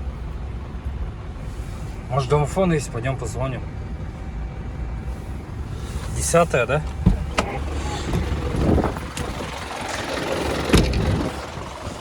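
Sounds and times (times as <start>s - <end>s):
blizzard wind buffeting microphone: 7.2s - 12.0s.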